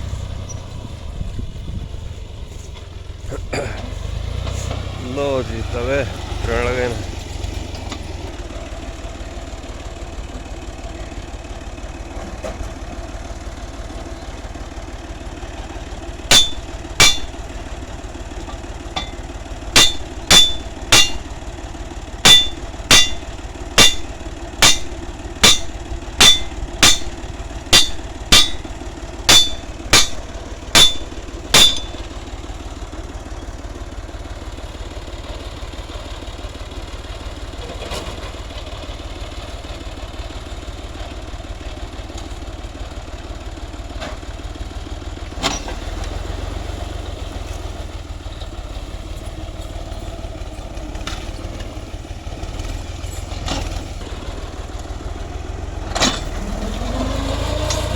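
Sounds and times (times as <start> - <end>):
tractor engine idling: 0.0 - 57.9
sharp ringing metallic clanks: 16.2 - 17.9, 18.5 - 21.6, 22.2 - 32.4.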